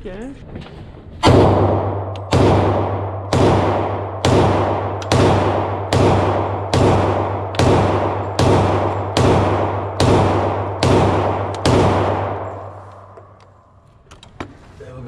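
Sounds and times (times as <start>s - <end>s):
handgun shots echoing: 1.2s - 13.6s.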